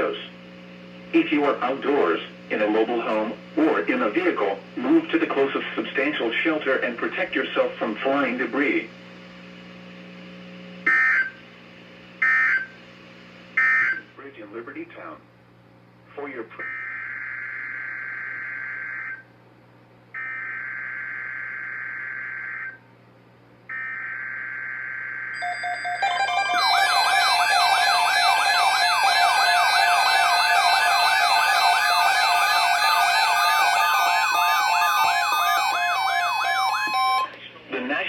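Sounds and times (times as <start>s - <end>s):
siren-like alert tone: 10.9s - 11.4s, 12.2s - 12.7s, 23.7s - 37.4s
buzzing digital data tones: 23.8s - 37.3s.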